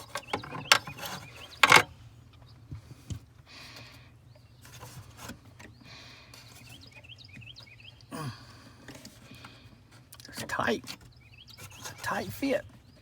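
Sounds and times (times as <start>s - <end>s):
small bird chirping: 0.0s - 2.7s, 3.9s - 8.1s, 10.5s - 13.0s
faint clicks and scrapes: 4.6s - 7.8s, 8.8s - 13.0s.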